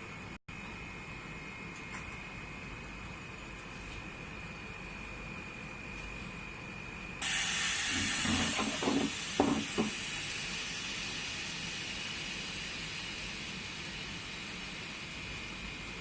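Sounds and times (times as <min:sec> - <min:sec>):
air hissing from machine: 0:07.2 - 0:16.0.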